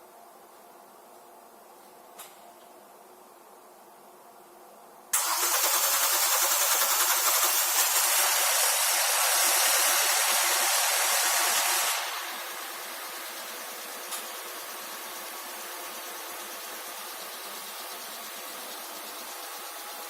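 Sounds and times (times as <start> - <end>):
hiss of rushing air or spray: 5.2 - 20.0.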